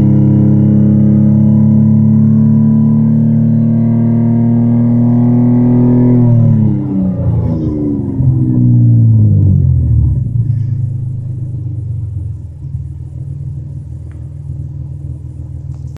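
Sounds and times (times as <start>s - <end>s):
car engine revving down to idle: 0.0s - 16.0s.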